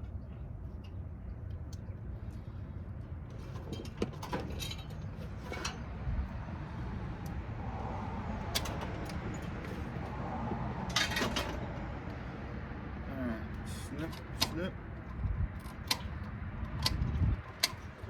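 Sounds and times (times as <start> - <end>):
steady low rumble: 5.8 - 18.0.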